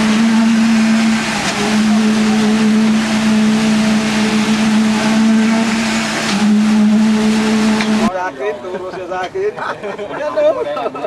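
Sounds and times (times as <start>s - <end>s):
engine drone: 0.0s - 8.1s.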